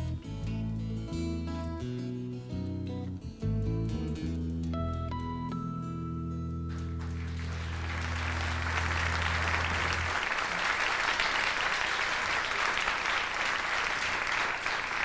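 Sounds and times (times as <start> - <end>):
audience applauding: 6.7 - 15.0.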